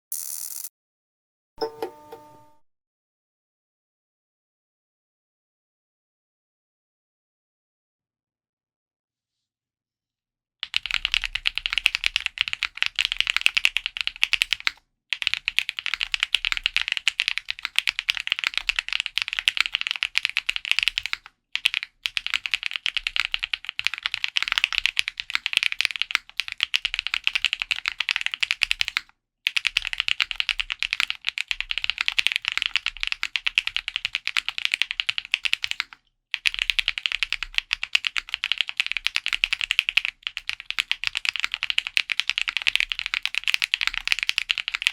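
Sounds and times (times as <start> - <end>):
mechanical keyboard typing: 1.6 - 2.6, 10.6 - 44.9.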